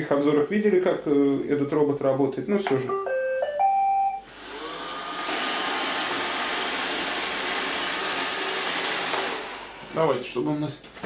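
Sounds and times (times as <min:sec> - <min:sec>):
electronic beep tune: 0:02.9 - 0:04.3
robot vacuum motor whirring: 0:04.3 - 0:09.8.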